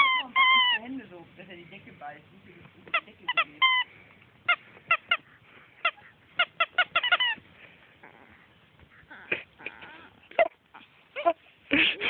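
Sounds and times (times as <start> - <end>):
rubber squeaky toy squeaking: 0.0 - 1.0, 2.9 - 7.4.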